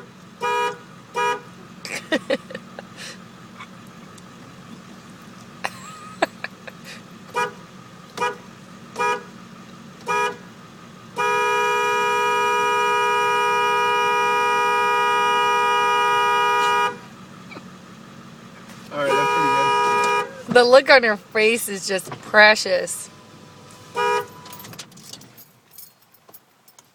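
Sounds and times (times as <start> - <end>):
truck horn honking: 0.0 - 1.6, 7.3 - 9.4, 10.0 - 10.5, 11.1 - 17.2, 18.9 - 23.1, 23.8 - 24.6.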